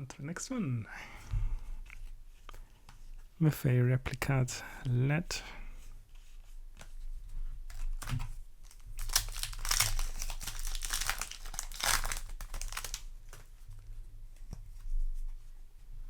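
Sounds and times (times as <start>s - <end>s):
rustling of cards: 7.6s - 13.7s
foil wrapper crinkling: 7.7s - 13.5s.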